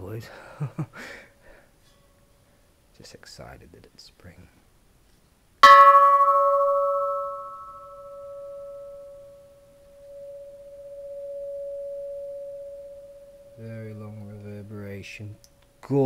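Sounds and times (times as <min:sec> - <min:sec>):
bronze bell ringing: 0:05.6 - 0:15.2.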